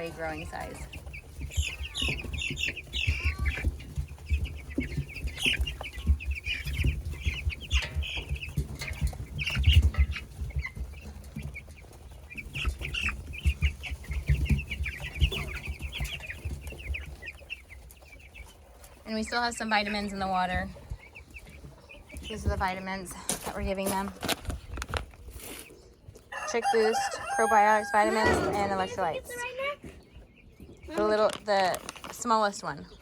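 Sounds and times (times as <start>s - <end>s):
chicks peeping: 0.0s - 33.0s
low thumps and rumbling: 28.2s - 29.4s.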